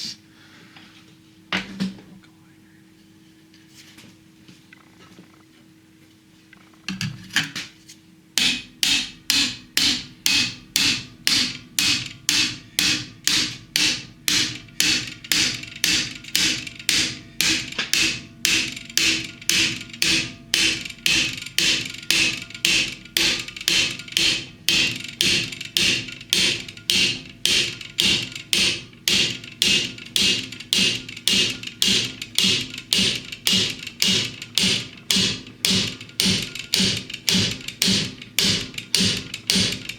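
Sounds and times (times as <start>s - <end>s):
hammer blows on metal: 8.4s - 39.9s.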